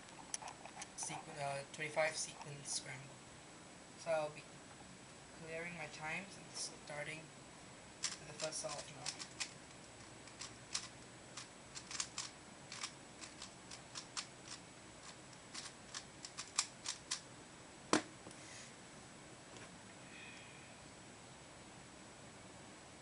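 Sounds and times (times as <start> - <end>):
puzzle cube turning clicks: 8.0 - 17.2.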